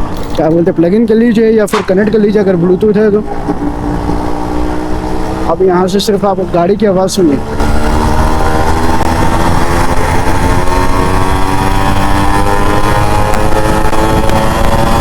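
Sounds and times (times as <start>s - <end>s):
two-stroke motorcycle engine running: 3.2s - 15.0s.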